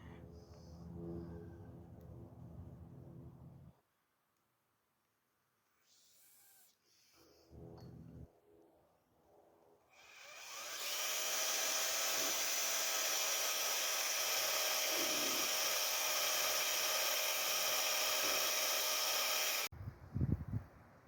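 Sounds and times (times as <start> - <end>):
power drill boring into metal: 10.0 - 19.7.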